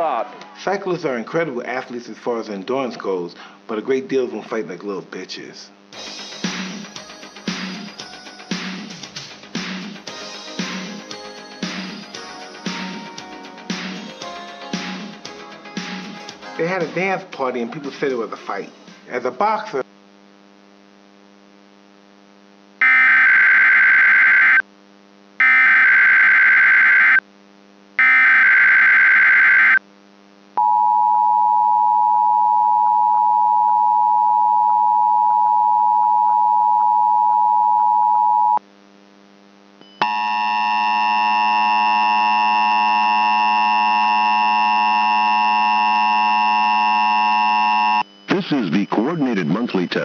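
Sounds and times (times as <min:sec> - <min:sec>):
steady multi-tone buzz: 0:18.8 - 0:30.7, 0:38.6 - 0:50.0
two-tone attention signal: 0:39.9 - 0:50.0
warbling digital data bursts: 0:45.8 - 0:50.0.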